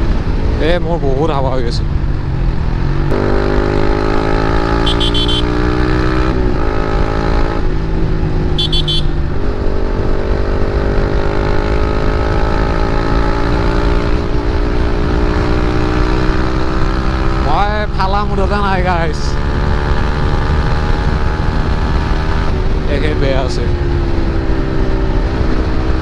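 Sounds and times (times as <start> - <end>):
motorcycle engine accelerating: 2.1 - 26.0
vehicle horn beeping: 4.8 - 5.7, 8.6 - 9.4.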